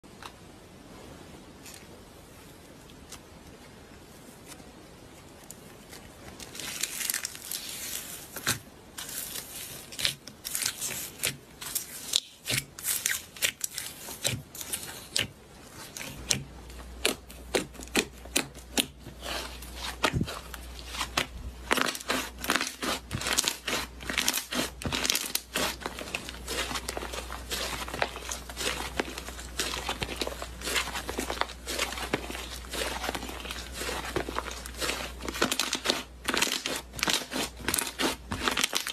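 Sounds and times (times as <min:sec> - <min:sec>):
low steady hum: 0:00.0 - 0:38.9
slime crackling and popping: 0:17.0 - 0:38.9.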